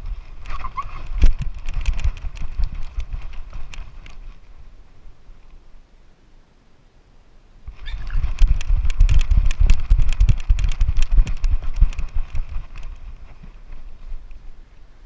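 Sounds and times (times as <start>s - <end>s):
dog running footfalls: 7.7s - 14.1s.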